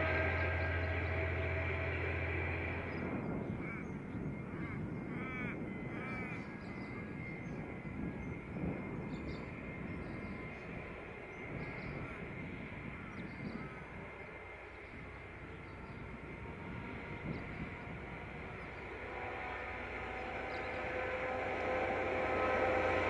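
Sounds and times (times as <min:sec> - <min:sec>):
low engine hum: 0:00.0 - 0:05.5, 0:07.6 - 0:23.0
steady low rumble: 0:00.0 - 0:23.0
crow-like bird calls: 0:03.4 - 0:07.3.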